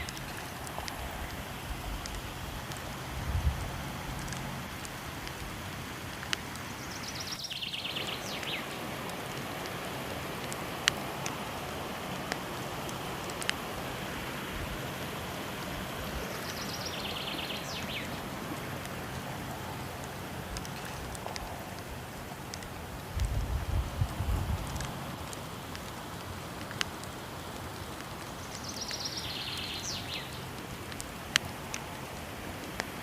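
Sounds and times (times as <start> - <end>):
waterfall rushing: 0.0 - 23.2
wood fire crackling: 0.0 - 33.0.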